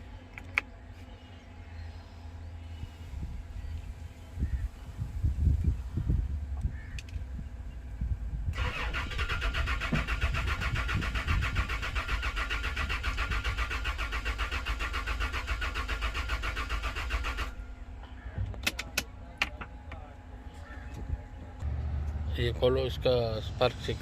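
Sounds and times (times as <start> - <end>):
engine cranking without starting: 8.5 - 17.7.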